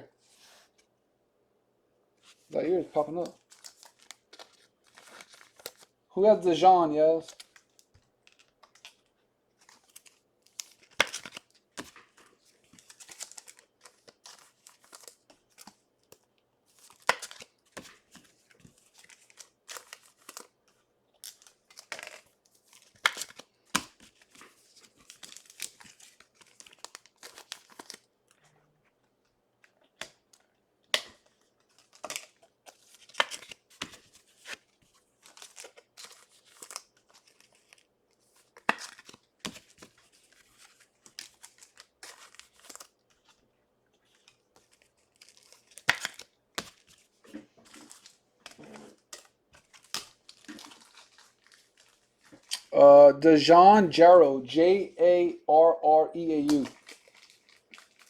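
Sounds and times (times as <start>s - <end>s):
plastic wrappers crinkling: 3.0s - 6.0s, 7.2s - 28.4s, 29.6s - 52.7s, 56.4s - 58.0s.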